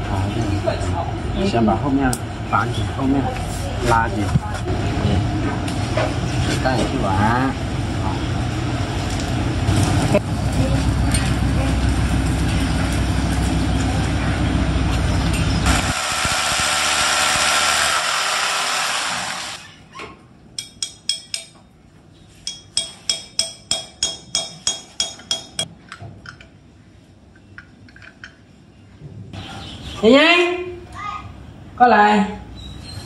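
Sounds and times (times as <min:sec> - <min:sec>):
loud mechanical noise with hum: 0:00.0 - 0:20.4.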